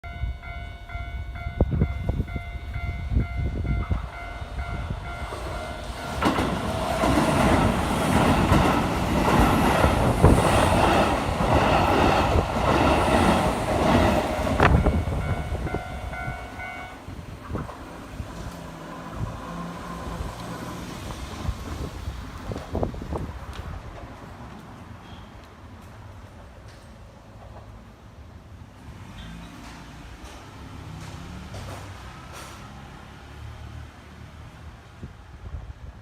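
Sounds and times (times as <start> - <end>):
level crossing warning bell: 0.0 - 6.6, 14.4 - 17.2
train wheels clattering: 5.3 - 15.9.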